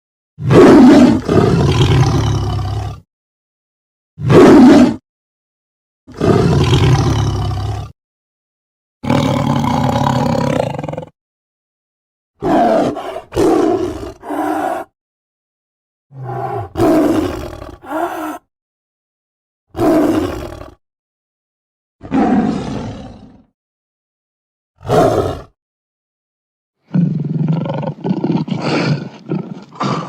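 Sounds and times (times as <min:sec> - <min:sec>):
cartoon gorilla roars and grunts: 0:00.4 - 0:03.1, 0:04.2 - 0:05.0, 0:06.1 - 0:08.0, 0:09.0 - 0:11.1, 0:12.4 - 0:14.9, 0:16.1 - 0:18.5, 0:19.8 - 0:20.8, 0:22.0 - 0:23.5, 0:24.8 - 0:25.6, 0:26.9 - 0:30.0.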